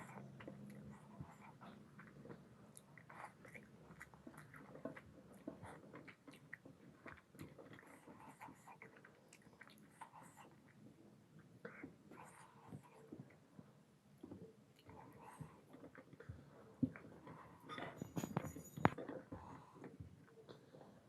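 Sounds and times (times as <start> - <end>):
mouth chewing food: 0.0 - 17.8.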